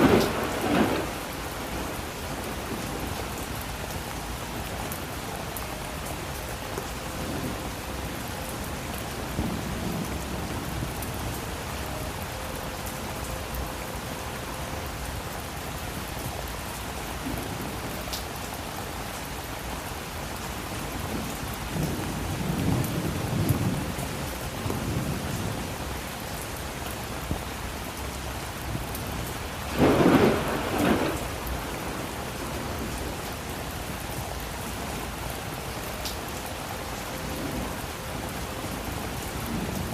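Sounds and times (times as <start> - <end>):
sharp thunderclap: 0.0 - 1.2, 29.7 - 31.4
low thunder rumbling: 0.0 - 3.7, 7.1 - 12.2, 20.9 - 26.4, 28.6 - 35.0
steady rain falling: 0.0 - 39.9.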